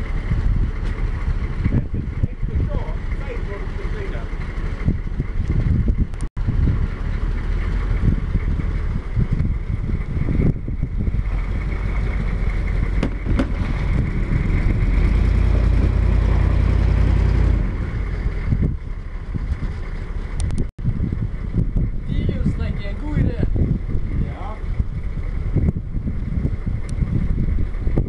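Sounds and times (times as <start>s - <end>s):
vehicle engine and road rumble: 0.0s - 28.0s
wind noise: 0.0s - 28.0s.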